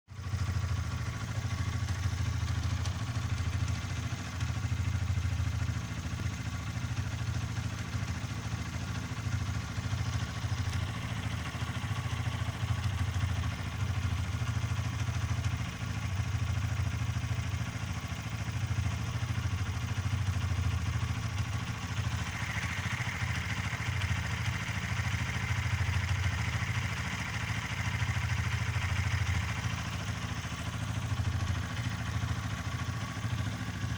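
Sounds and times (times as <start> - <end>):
motorcycle engine clattering idle: 0.2 - 33.9.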